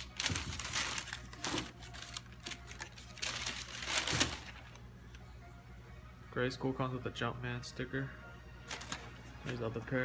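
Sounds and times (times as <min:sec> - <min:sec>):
packaging rustling and clattering: 0:00.0 - 0:04.8, 0:08.7 - 0:09.2.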